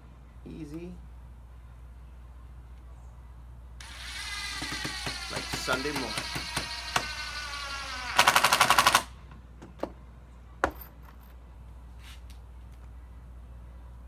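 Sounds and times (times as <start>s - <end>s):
power screwdriver driving screw: 3.8s - 9.1s.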